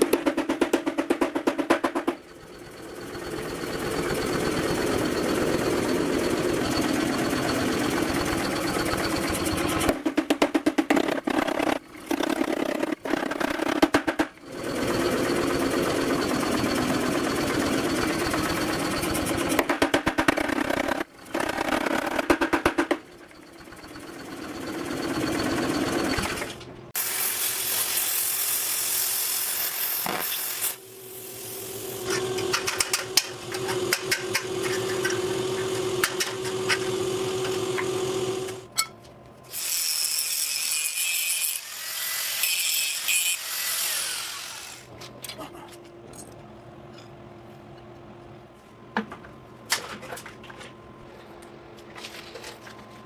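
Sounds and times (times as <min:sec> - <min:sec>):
machine steady hum: 0:00.0 - 0:26.9
power tools running: 0:29.4 - 0:38.7, 0:41.6 - 0:44.9.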